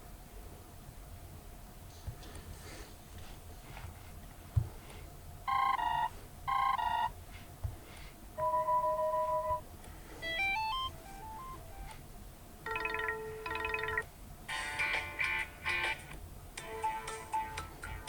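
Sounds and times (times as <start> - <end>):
phone ringtone chimes and melodies: 8.4 - 9.6, 10.2 - 11.9, 12.7 - 14.0.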